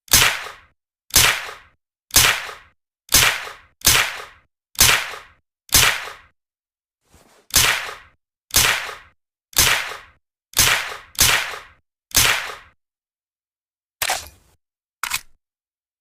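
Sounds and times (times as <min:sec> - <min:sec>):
suppressed gunshots: 0:07.5 - 0:12.8.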